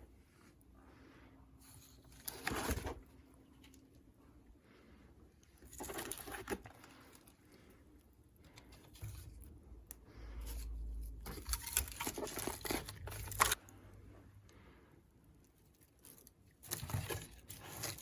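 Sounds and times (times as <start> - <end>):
rustling and crunching: 1.6 - 4.1, 5.3 - 14.0, 15.3 - 18.0.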